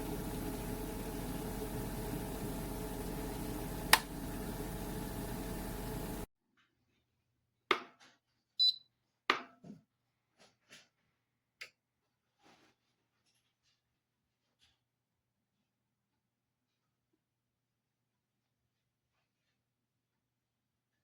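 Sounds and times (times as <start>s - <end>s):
kettle switch click: 0.0s - 6.2s
electric kettle heating water: 0.0s - 6.3s.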